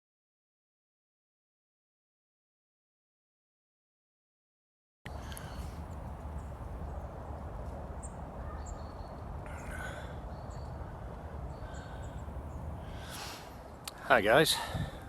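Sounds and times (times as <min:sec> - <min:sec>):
high bird chirps: 0:05.1 - 0:13.3
low background rumble: 0:05.1 - 0:13.6
rustle: 0:05.1 - 0:15.0.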